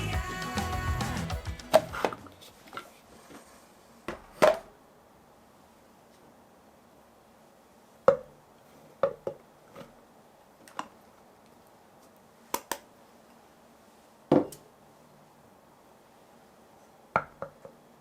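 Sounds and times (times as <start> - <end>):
utensils and containers knocking: 0.6 - 2.3.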